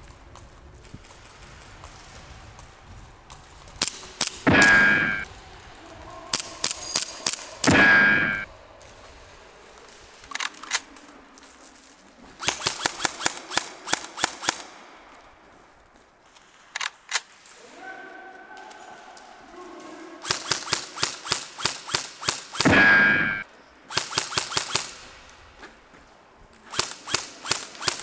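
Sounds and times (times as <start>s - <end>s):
airsoft guns firing: 3.8s - 8.5s, 12.4s - 15.0s, 20.2s - 25.2s, 26.7s - 28.0s.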